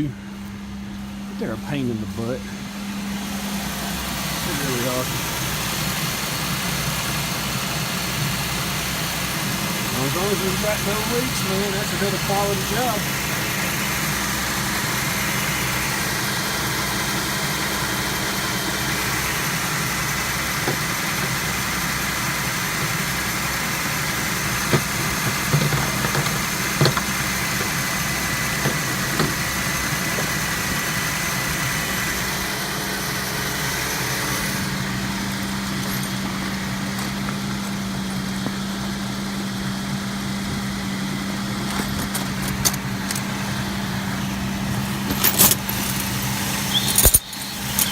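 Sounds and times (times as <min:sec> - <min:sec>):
car engine idling: 0:00.0 - 0:47.9.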